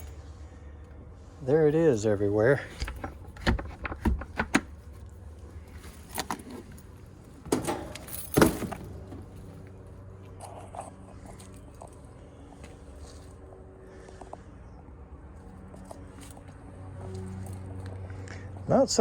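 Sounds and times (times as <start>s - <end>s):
steady low hum: 0.0s - 19.0s
objects knocking and rattling: 2.7s - 5.0s, 6.0s - 9.6s.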